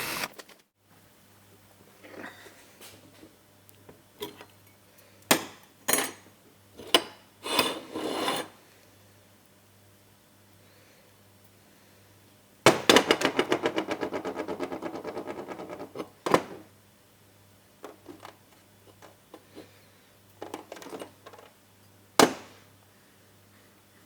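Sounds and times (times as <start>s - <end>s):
parts knocking and clicking: 12.7s - 16.7s, 17.8s - 19.5s, 20.4s - 21.6s.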